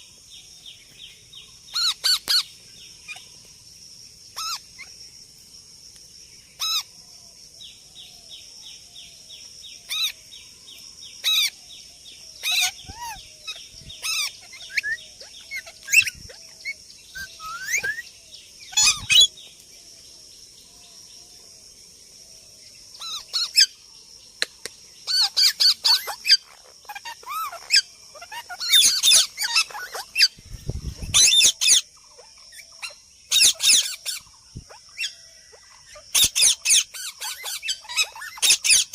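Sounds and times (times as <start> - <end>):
parrot squawking and chirping: 1.7 - 2.5, 4.4 - 4.9, 12.4 - 16.4, 17.1 - 18.0, 18.7 - 19.3, 23.0 - 23.7, 25.0 - 30.4, 31.0 - 38.9.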